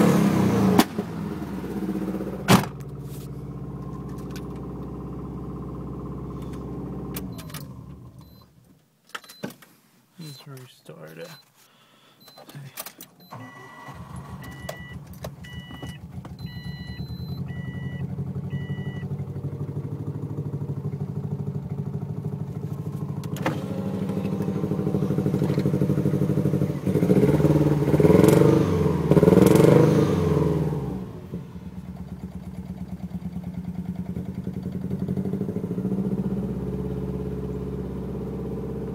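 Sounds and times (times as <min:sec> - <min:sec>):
misfiring car engine revving: 0:00.0 - 0:02.8, 0:13.8 - 0:38.9.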